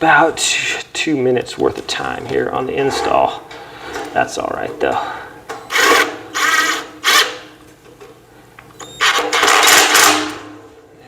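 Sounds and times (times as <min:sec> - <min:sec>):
power drill motor whine: 0:05.7 - 0:07.3.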